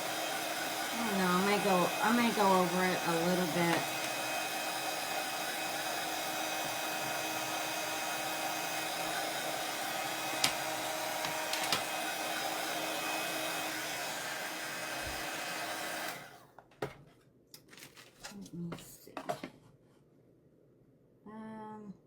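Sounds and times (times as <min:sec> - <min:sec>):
hot-air dryer running: 0:00.0 - 0:16.5.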